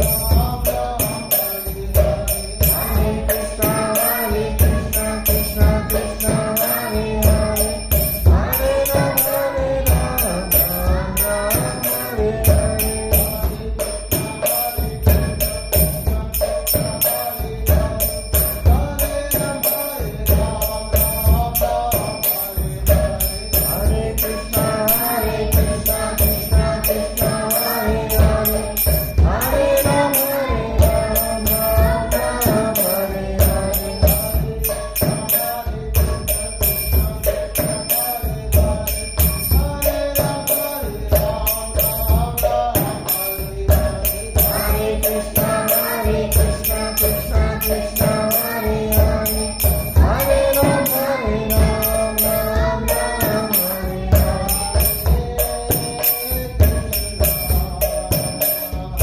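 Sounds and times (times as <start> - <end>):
jingling metal percussion: 0.0 - 59.0
steady percussion beat: 0.0 - 59.0
voices singing a chant: 0.0 - 59.0.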